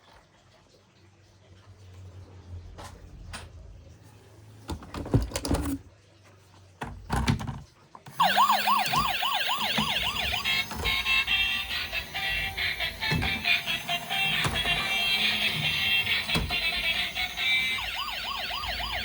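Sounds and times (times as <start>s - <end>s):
toys knocking and clicking: 7.0s - 19.0s
toy electronic siren: 8.1s - 19.0s.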